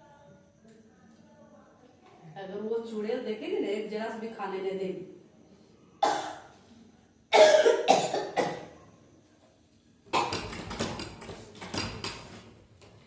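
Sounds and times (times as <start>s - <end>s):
woman coughing: 6.0s - 6.5s, 7.3s - 8.7s.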